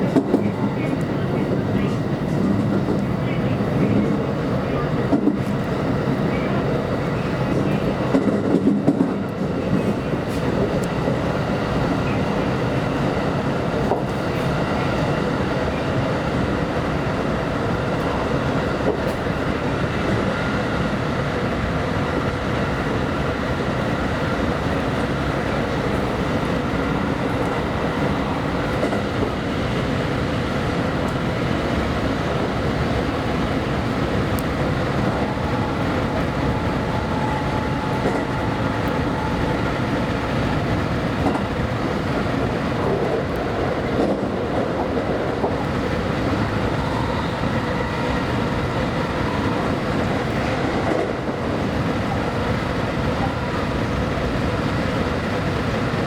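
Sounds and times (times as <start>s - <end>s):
train wheels clicking over rail joints: 7.5s - 11.8s.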